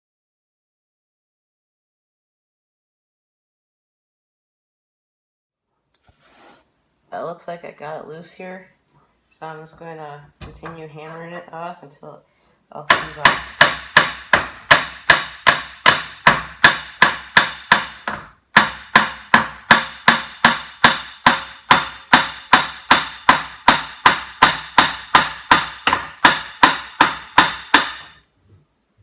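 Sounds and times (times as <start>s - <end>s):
hammer blows ringing on metal: 12.9s - 28.2s.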